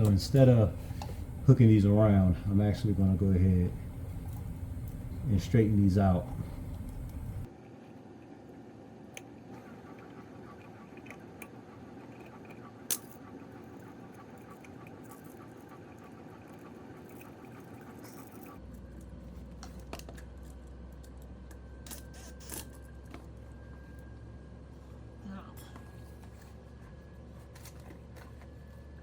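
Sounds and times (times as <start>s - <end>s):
steady low hum: 0.0s - 7.5s.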